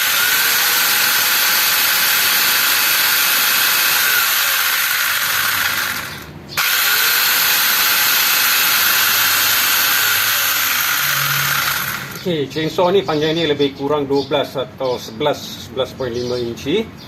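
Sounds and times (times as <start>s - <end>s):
chainsaw chain whirring: 0.0s - 12.3s.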